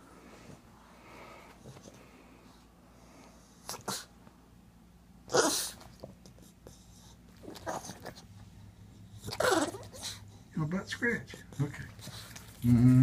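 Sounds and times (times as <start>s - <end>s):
dog snorting: 5.3s - 8.3s, 9.2s - 10.3s.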